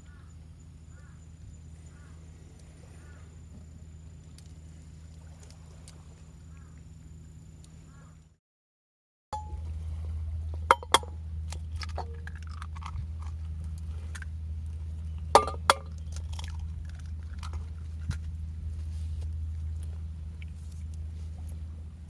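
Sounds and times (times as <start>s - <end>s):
steady low rumble: 0.0s - 8.4s, 9.4s - 22.0s
cookware clinking and knocking: 15.4s - 15.8s.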